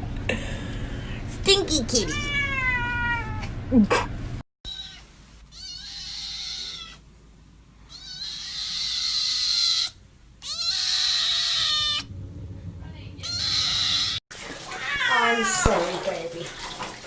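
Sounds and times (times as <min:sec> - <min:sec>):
cat meowing: 0:02.0 - 0:03.5, 0:04.7 - 0:07.0, 0:07.9 - 0:12.1, 0:13.2 - 0:15.8.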